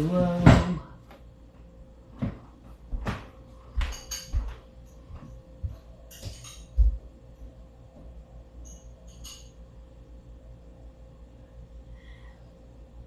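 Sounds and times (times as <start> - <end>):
kitchen knocks and thumps: 2.2 - 4.6
dishes clinking: 3.8 - 5.1, 6.0 - 7.0, 8.6 - 9.6.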